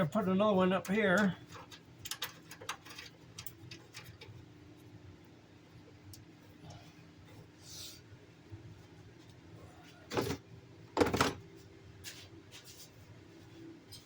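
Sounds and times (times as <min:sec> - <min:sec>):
faint steady hum: 0:00.0 - 0:14.0
objects clattering: 0:11.0 - 0:11.4.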